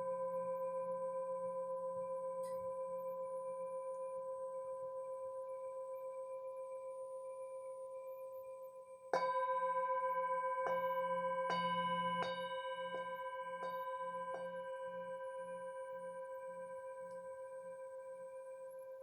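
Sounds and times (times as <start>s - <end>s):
singing bowl ringing: 0.0s - 19.0s
singing bowl struck: 9.1s - 17.4s.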